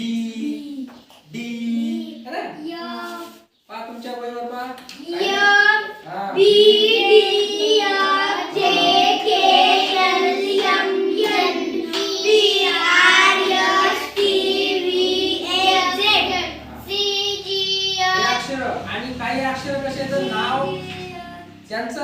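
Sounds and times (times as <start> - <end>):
children chanting together: 5.0 - 18.5.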